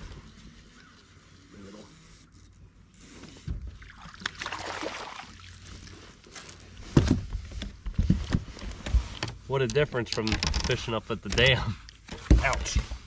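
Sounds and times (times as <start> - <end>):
water splashing around boat: 0.0 - 7.6.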